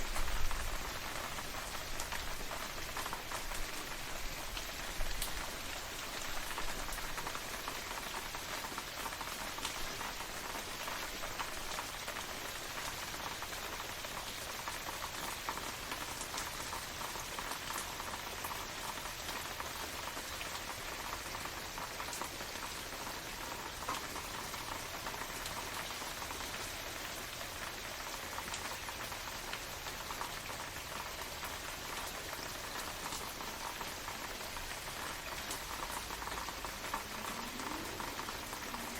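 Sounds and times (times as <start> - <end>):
raindrops ticking on a surface: 0.0 - 38.9
steady rain falling: 0.0 - 38.9.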